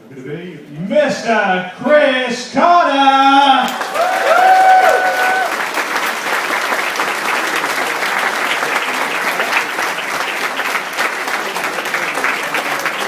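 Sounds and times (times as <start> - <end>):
audience applauding: 3.6 - 13.0.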